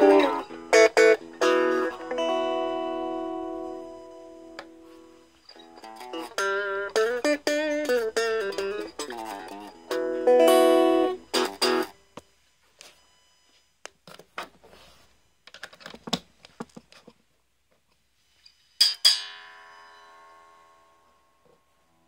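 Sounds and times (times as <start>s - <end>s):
electric guitar chord ringing: 0.0s - 12.0s.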